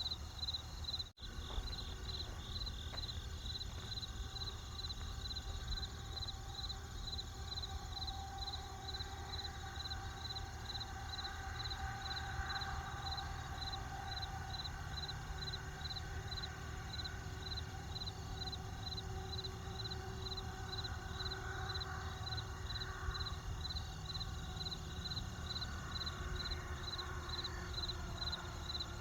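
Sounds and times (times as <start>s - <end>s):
crickets chirping: 0.0s - 29.0s
campfire rumble: 1.2s - 7.9s.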